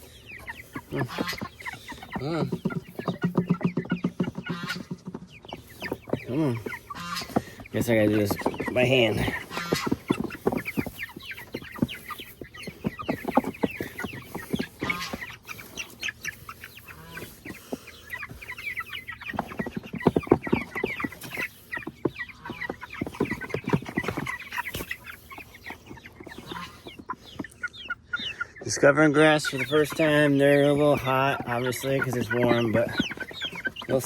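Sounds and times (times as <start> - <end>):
chickens cheeping and clucking: 0.0 - 34.0
chickens squawking: 0.0 - 34.0
knocks and rustling: 1.0 - 15.4, 19.2 - 25.0.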